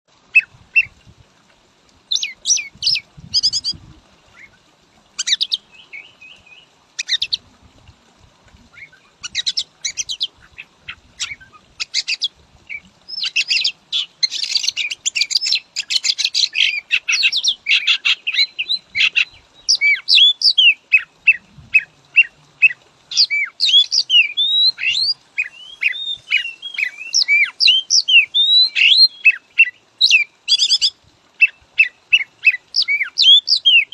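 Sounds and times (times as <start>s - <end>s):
bird singing whistles and chirps: 22.2s - 30.9s.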